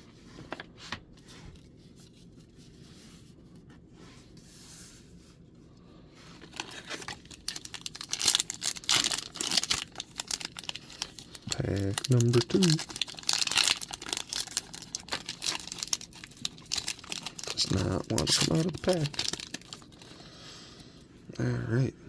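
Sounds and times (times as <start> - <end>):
foil wrapper crinkling and tearing: 6.4 - 20.2.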